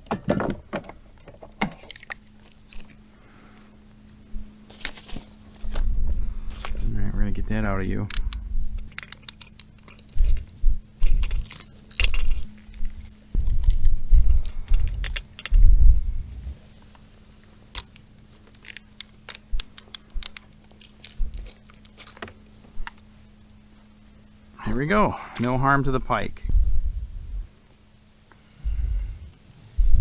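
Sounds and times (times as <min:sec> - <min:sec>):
scattered clicks: 0:07.9 - 0:15.6, 0:17.8 - 0:21.8
metal hook and lure rattling: 0:08.0 - 0:10.5, 0:11.1 - 0:15.7.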